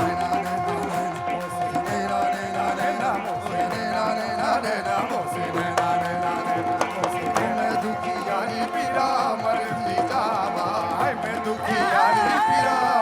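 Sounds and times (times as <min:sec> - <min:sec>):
hand drums fast beat: 0:00.0 - 0:13.0
winding melody line: 0:00.0 - 0:13.0.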